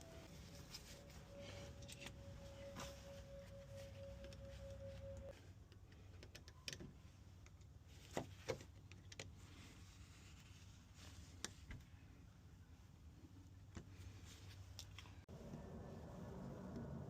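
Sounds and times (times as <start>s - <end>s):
faint steady tone: 0.0s - 6.7s.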